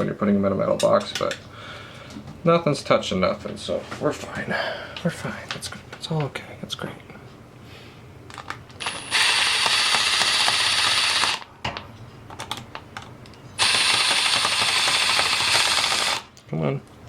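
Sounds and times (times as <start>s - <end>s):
cordless drill driving screws: 8.8s - 11.4s, 13.6s - 16.3s.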